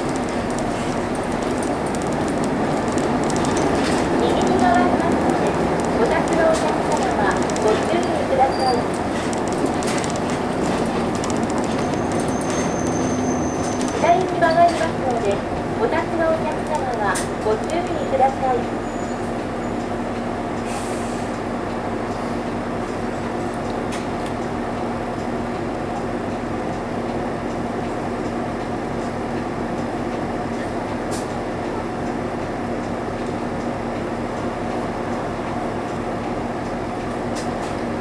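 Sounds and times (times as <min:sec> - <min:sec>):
cabin clicks and rattles: 0:00.0 - 0:15.4
road noise: 0:00.0 - 0:18.6.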